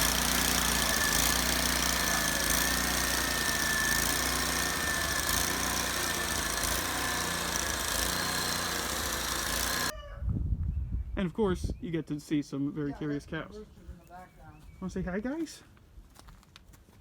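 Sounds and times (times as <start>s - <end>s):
engine running steadily: 0.0s - 9.9s.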